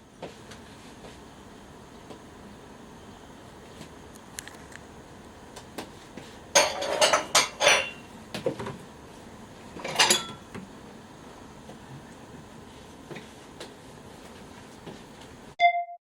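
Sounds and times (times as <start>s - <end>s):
metal cookware clattering: 6.5s - 8.1s, 9.8s - 10.5s.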